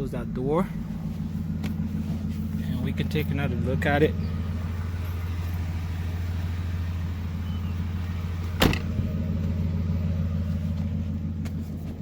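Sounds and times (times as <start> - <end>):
car engine idling: 0.0 - 12.0
car door slamming: 8.5 - 9.1.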